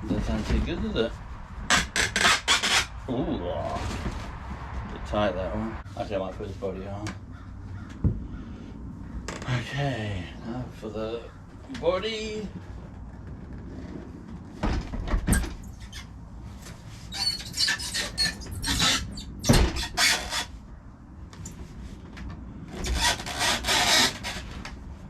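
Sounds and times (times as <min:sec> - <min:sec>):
parts rubbing and scraping: 0:01.6 - 0:04.8, 0:15.3 - 0:20.6, 0:22.8 - 0:24.7.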